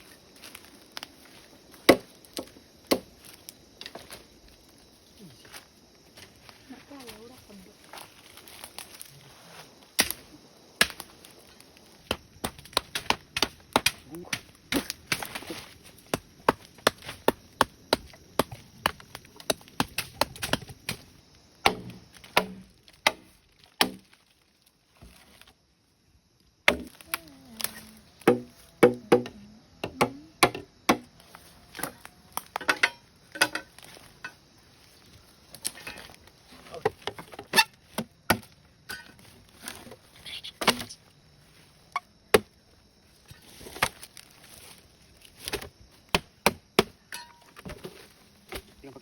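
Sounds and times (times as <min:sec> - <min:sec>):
blade chopping bamboo: 0:12.1 - 0:15.4, 0:16.1 - 0:24.1, 0:28.2 - 0:31.1.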